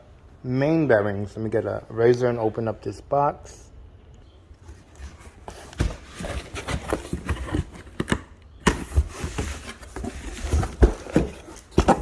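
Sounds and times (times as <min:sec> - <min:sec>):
cardboard scratching and crackling: 0:04.8 - 0:12.0.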